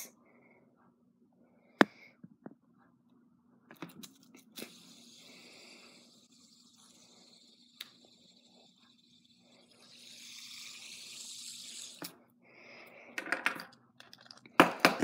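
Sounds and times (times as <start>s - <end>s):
fidget spinner whirring: 3.8s - 12.2s.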